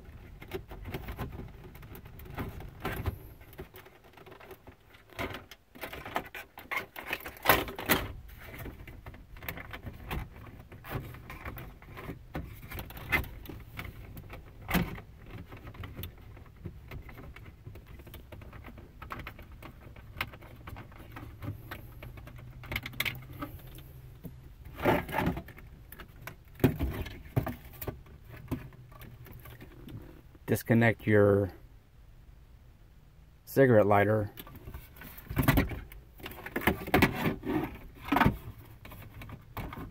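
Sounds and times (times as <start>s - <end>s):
clicks and rattles of plastic trim: 0.3s - 30.0s.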